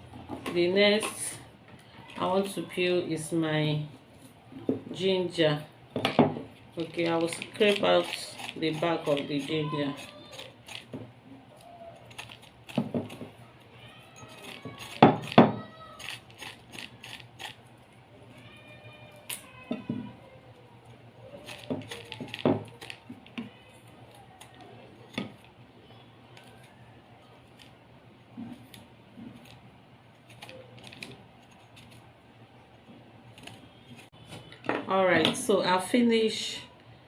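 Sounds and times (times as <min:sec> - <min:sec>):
ginger root being scraped: 0:06.8 - 0:10.9, 0:12.0 - 0:13.3, 0:14.2 - 0:17.7, 0:21.4 - 0:25.5
high squeaks: 0:11.6 - 0:17.7.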